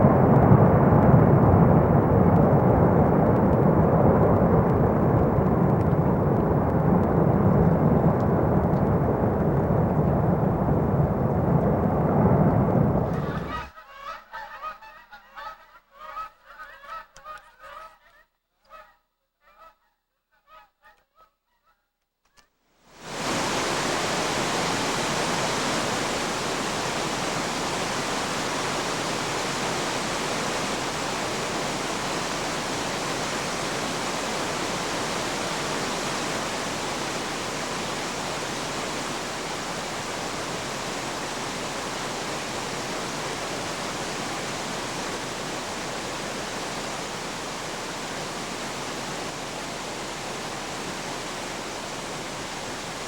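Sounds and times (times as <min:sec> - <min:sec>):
loud steady rushing hiss: 0:00.0 - 0:13.7, 0:22.9 - 0:53.0.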